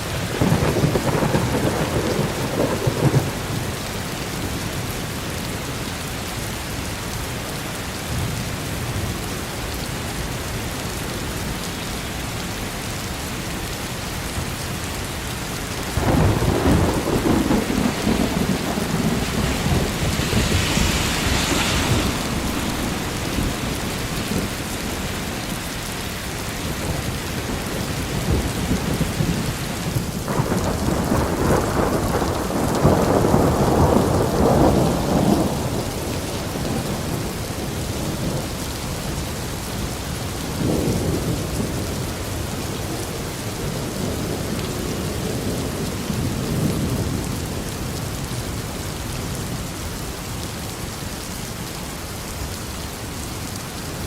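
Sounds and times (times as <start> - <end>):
steady rain: 0.0 - 54.0
rolling thunder: 0.2 - 3.9, 15.8 - 38.6.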